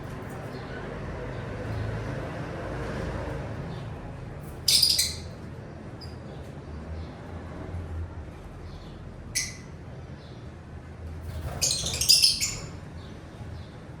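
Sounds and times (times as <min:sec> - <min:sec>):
parrots squawking: 0:04.6 - 0:05.4, 0:11.4 - 0:12.8.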